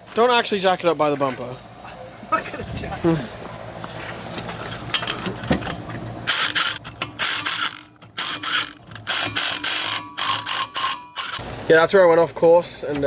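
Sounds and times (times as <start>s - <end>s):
impact wrench hammering: 6.3s - 11.4s.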